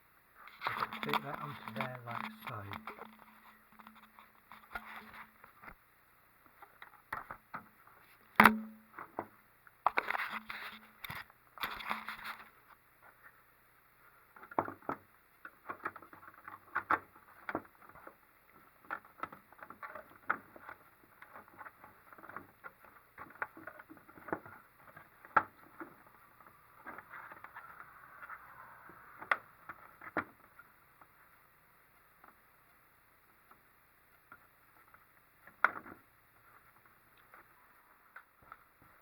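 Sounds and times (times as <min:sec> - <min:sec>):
rustling: 0:15.5 - 0:39.0.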